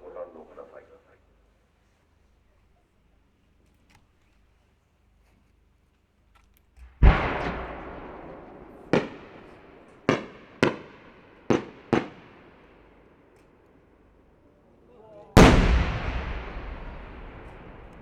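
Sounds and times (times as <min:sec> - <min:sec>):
firework shells bursting: 0:06.8 - 0:10.8, 0:15.4 - 0:18.0.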